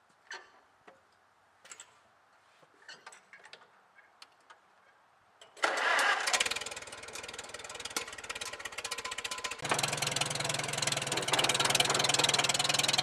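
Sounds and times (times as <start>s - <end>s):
sawmill engine running: 5.6s - 13.0s.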